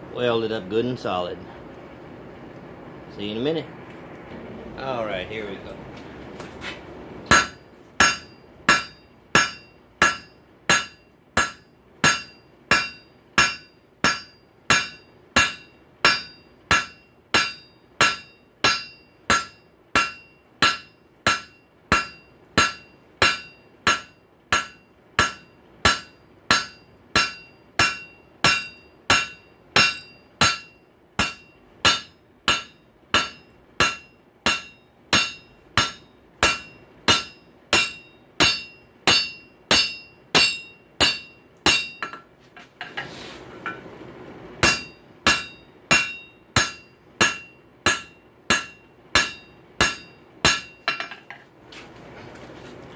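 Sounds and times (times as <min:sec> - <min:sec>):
hammer blows on an anvil: 0:07.3 - 0:42.3, 0:44.6 - 0:51.3.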